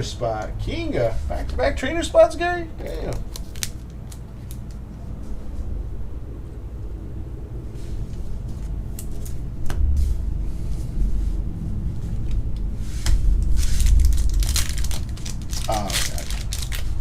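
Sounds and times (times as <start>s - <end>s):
foil wrapper crinkling: 2.8s - 4.9s, 13.4s - 17.0s.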